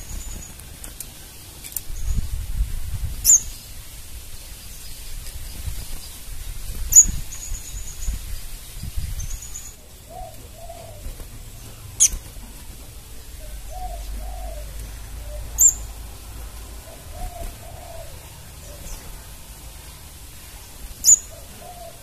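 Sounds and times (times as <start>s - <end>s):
soft low cooing calls: 9.6s - 22.0s
sharp high bird chirps: 15.6s - 15.9s, 21.0s - 21.3s.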